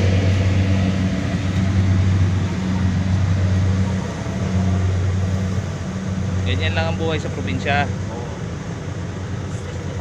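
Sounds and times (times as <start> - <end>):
combine harvester engine droning: 0.0 - 10.0.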